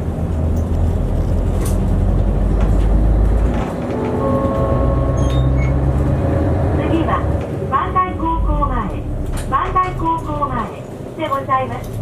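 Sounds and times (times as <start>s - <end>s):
bus engine rumble: 0.0s - 12.0s.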